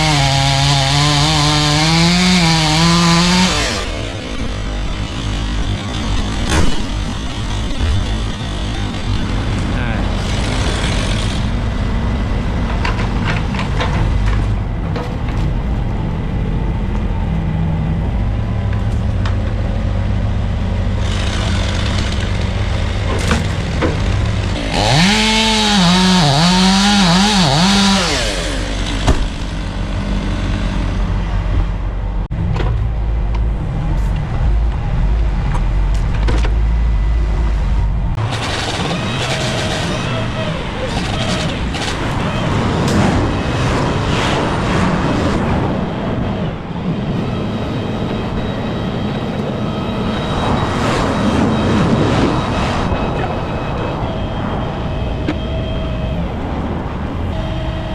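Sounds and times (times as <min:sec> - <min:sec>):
chainsaw revving and cutting: 0:00.0 - 0:11.6, 0:20.9 - 0:31.0, 0:38.2 - 0:42.1
heavy engines rumbling: 0:00.0 - 0:57.9
knocks of wood and gear: 0:06.4 - 0:07.0, 0:28.9 - 0:29.5.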